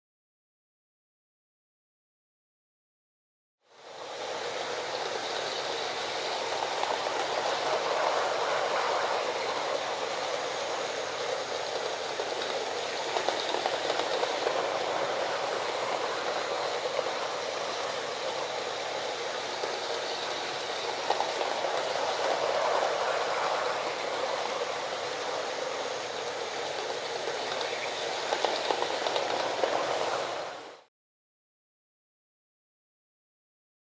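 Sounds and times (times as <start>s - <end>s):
toy train whirring rattle: 4.0s - 30.8s.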